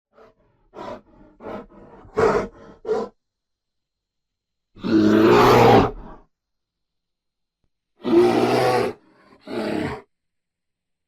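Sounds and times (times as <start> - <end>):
bear grunting: 0.2 - 3.1
bear roaring: 4.8 - 6.2, 8.0 - 10.1.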